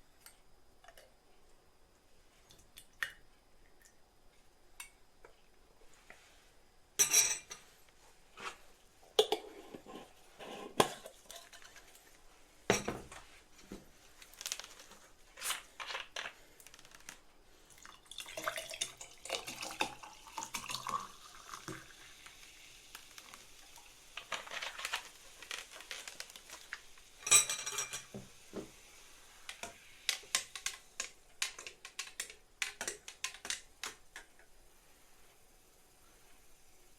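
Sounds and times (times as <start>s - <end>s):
dishes and utensils clinking: 7.0s - 7.8s, 27.2s - 28.3s
liquid being poured: 17.7s - 24.8s.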